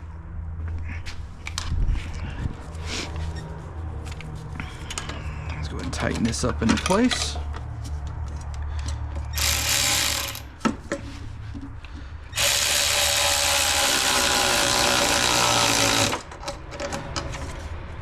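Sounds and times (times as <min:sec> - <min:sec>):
power driver running: 0:09.4 - 0:10.4, 0:12.4 - 0:16.2.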